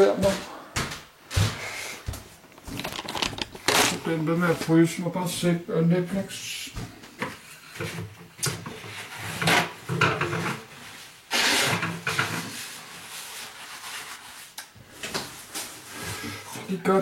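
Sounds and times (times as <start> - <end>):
handling knocks and rustling: 2.1 - 4.7
scrape: 8.7 - 9.7, 10.3 - 14.6, 15.4 - 16.6.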